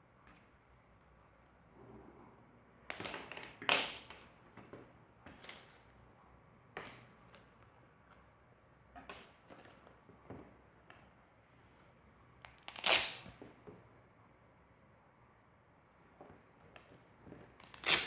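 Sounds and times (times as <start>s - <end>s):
gloves rustling: 17.1s - 18.0s.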